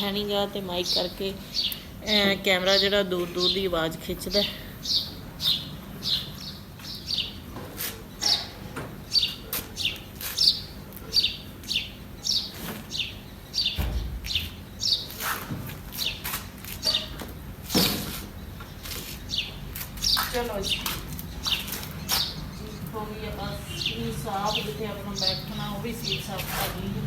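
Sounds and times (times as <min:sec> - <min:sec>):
bird chirping: 0:00.0 - 0:15.3, 0:15.9 - 0:17.2, 0:17.8 - 0:27.0
low thump: 0:13.8 - 0:14.5.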